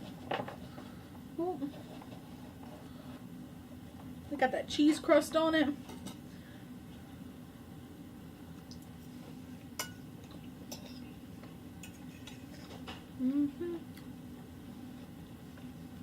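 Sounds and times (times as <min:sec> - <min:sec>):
person humming mm: 0:13.2 - 0:14.0.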